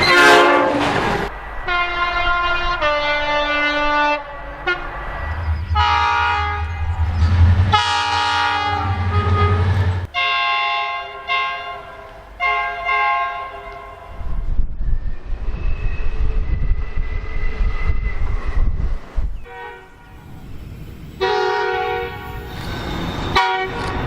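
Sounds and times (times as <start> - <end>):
train horn blasts: 0.0 - 5.0, 5.6 - 14.3, 19.4 - 20.3, 21.2 - 24.0
deep rumble: 0.9 - 10.1.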